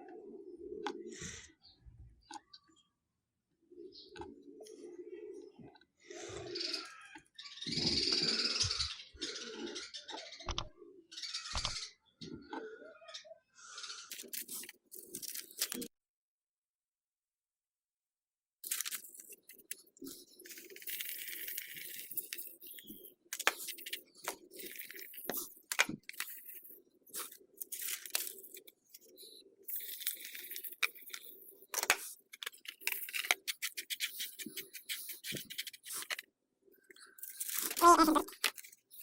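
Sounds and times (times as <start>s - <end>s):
rustling of objects handled: 36.9s - 39.0s.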